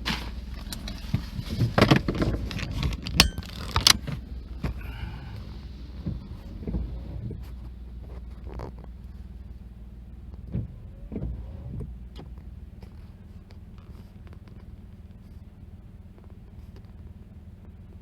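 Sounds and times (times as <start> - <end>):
vehicle metallic clanks and knocks: 0.0 - 7.4
low steady rumble: 0.0 - 18.0.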